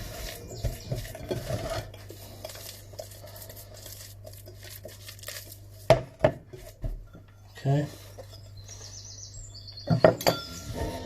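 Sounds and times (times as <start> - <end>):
food rustling by hand: 0.0 - 7.1
steady low hum: 0.0 - 11.0.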